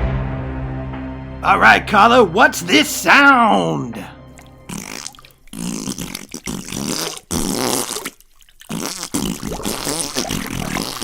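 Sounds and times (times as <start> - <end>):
wet sputtering fart sound: 4.7 - 11.0.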